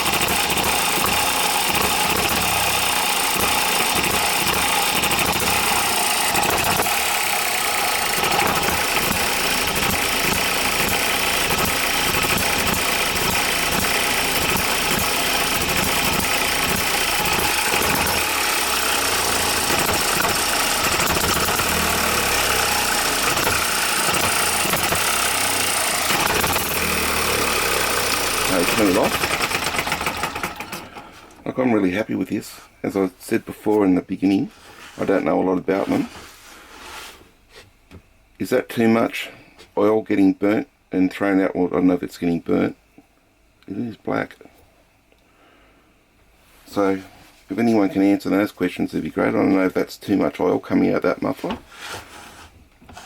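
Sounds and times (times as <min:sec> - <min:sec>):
miniature engine firing and clattering: 0:00.0 - 0:31.1.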